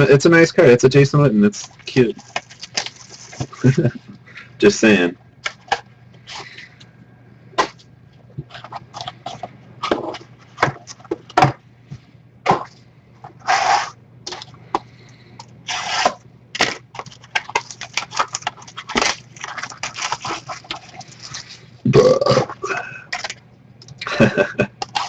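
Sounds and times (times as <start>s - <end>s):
plastic wrapper crinkling: 1.6s - 3.9s, 15.7s - 21.8s
tearing rasps: 13.4s - 15.1s, 15.7s - 23.3s
packaging clicks: 13.6s - 21.5s.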